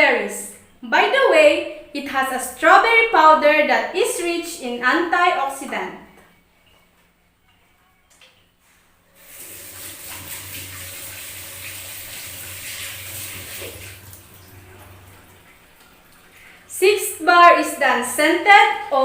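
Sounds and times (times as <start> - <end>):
water splashing into sink: 9.2 - 16.7.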